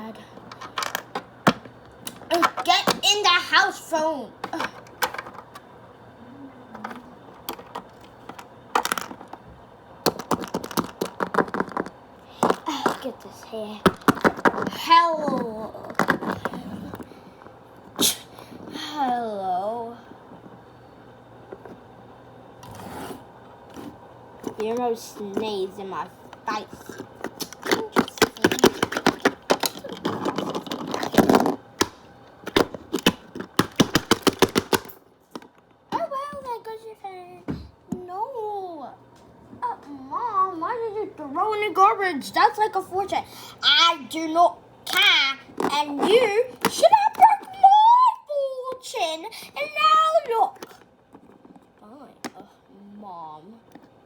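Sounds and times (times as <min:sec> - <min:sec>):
plastic toys clicking and tapping: 0:00.4 - 0:03.1, 0:04.4 - 0:05.6, 0:06.7 - 0:09.4, 0:10.0 - 0:17.1, 0:26.7 - 0:35.8, 0:44.9 - 0:47.6
plastic toy clicks and taps: 0:27.2 - 0:35.6.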